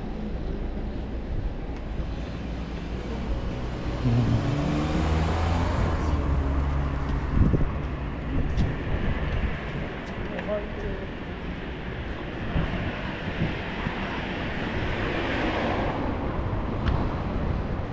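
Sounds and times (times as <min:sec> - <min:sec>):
vehicle passing by: 0:02.1 - 0:08.1.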